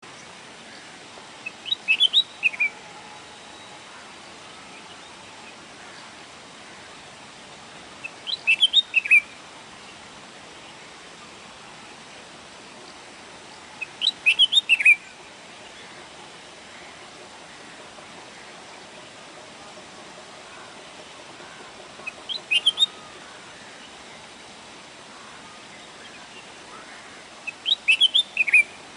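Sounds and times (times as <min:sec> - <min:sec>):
faint steady hiss: 0:00.0 - 0:28.9
bulbul singing: 0:01.4 - 0:05.6, 0:08.0 - 0:09.4, 0:13.5 - 0:16.0, 0:16.7 - 0:24.3, 0:25.7 - 0:28.8
bird singing high notes: 0:22.0 - 0:23.1.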